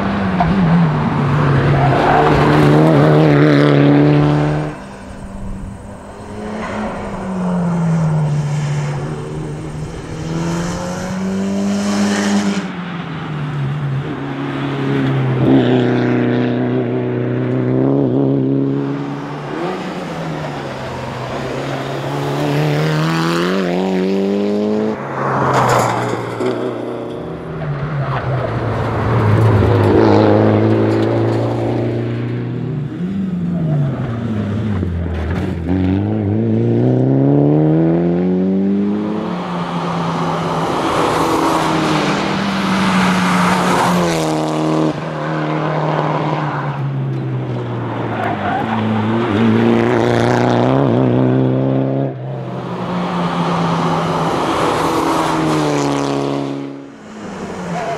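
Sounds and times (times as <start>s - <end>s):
car engine revving hard: 2.2s - 12.7s.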